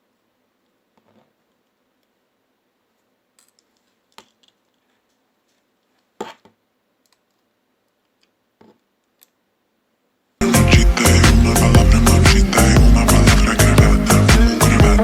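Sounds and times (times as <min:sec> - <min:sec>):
small plastic parts clicking: 0:03.4 - 0:06.0, 0:07.0 - 0:09.4.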